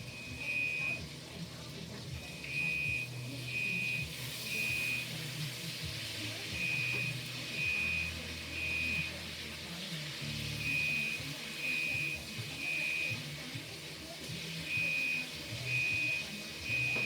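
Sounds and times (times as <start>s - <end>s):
smoke alarm beeping: 0.0s - 1.0s, 2.2s - 5.1s, 6.5s - 9.2s, 10.5s - 13.2s, 14.6s - 17.0s.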